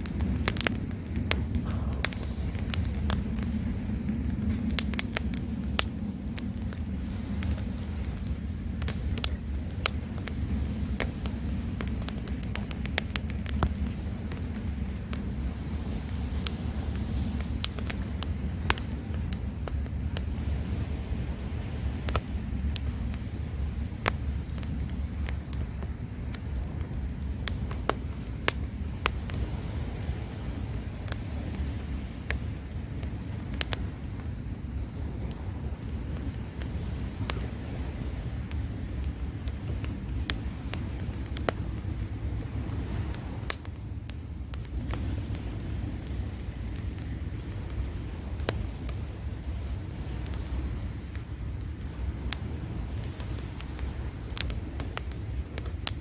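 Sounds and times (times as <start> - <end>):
campfire crackling and popping: 0.0 - 56.0
low rumble of surf: 0.0 - 56.0.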